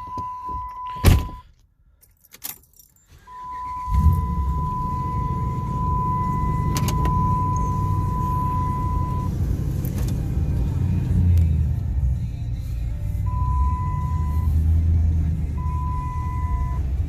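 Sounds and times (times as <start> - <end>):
high electronic warning tone: 3.3 - 9.4
truck engine idling: 3.4 - 17.0.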